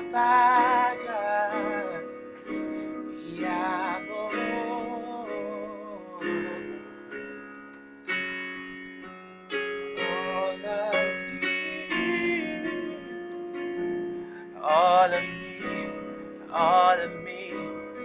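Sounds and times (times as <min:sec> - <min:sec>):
person singing with vibrato: 0:00.0 - 0:07.2, 0:09.9 - 0:18.0
guitar chords: 0:00.0 - 0:18.0
keyboard chords: 0:00.0 - 0:18.0.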